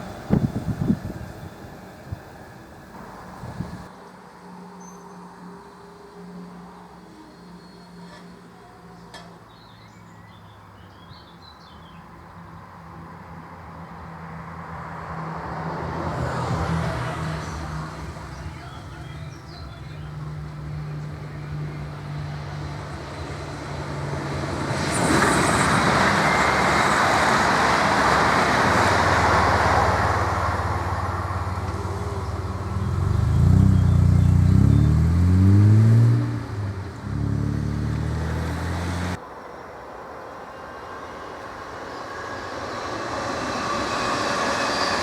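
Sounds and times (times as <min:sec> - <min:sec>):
train wheel and running noise: 0:00.0 - 0:04.4, 0:15.4 - 0:33.2
traction drive rising tones: 0:20.1 - 0:45.0.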